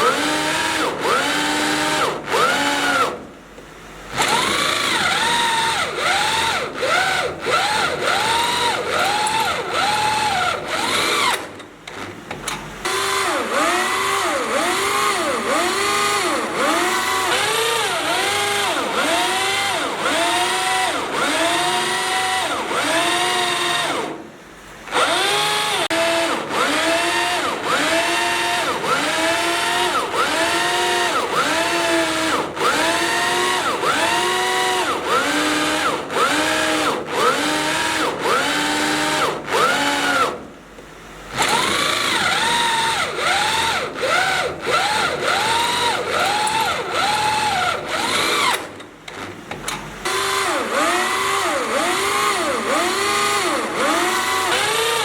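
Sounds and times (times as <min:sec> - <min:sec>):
power drill boring into steel: 0:04.2 - 0:11.5, 0:12.8 - 0:24.2, 0:24.9 - 0:40.4, 0:41.4 - 0:48.8, 0:50.0 - 0:55.0.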